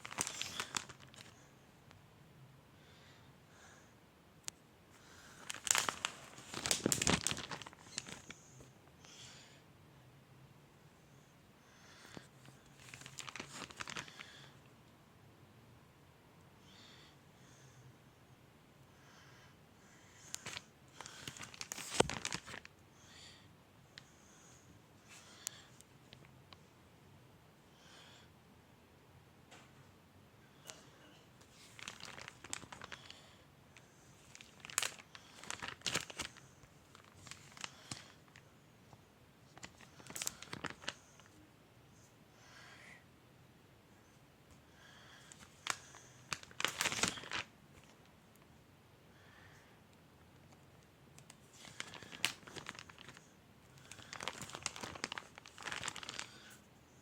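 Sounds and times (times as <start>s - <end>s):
crinkling and rustling: 0.0s - 2.0s, 5.3s - 8.7s, 12.1s - 14.4s, 20.3s - 22.7s, 30.7s - 33.2s, 33.9s - 41.4s, 45.2s - 48.5s, 50.4s - 56.6s.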